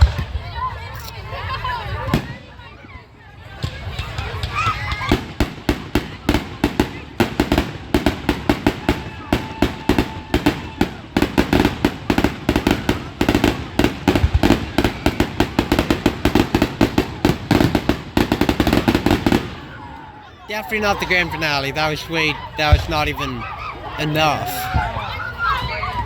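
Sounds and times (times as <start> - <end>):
fireworks banging: 3.5 - 20.0, 20.6 - 24.9.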